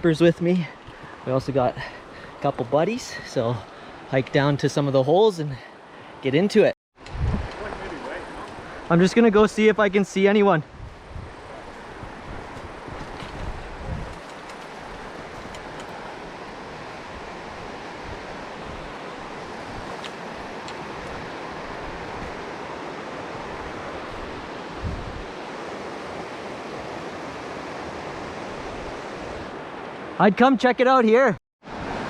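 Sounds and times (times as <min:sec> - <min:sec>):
wind thump on microphone: 0:07.0 - 0:07.9, 0:12.0 - 0:14.2
river current rushing: 0:07.1 - 0:30.5, 0:31.6 - 0:32.0.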